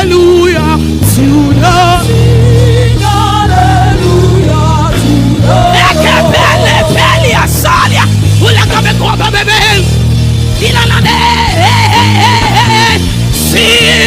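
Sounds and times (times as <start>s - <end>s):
singing with vibrato: 0.0s - 8.8s, 10.6s - 14.0s
keyboard and bass chords: 0.0s - 14.0s.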